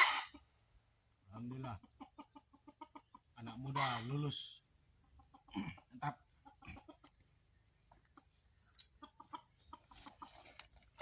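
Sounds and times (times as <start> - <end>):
junglefowl clucking: 0.0 - 0.5, 1.5 - 7.2, 8.0 - 10.5.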